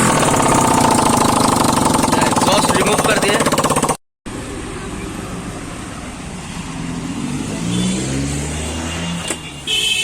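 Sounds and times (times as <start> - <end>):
road traffic: 0.0 - 10.0
vehicle engine passing: 4.4 - 9.2
vehicle horn: 8.8 - 10.0.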